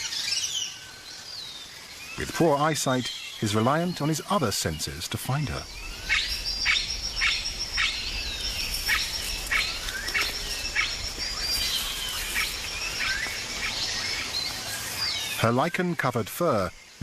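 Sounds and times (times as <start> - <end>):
birds chirping and calling: 0.0 - 17.0
insect high pulsed trill: 5.6 - 15.5.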